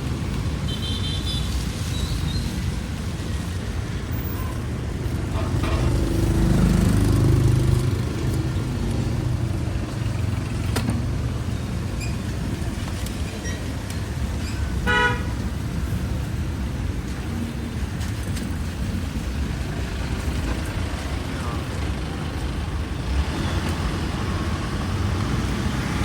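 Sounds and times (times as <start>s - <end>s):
road traffic: 0.0s - 26.0s
vehicle passing close: 21.9s - 26.0s.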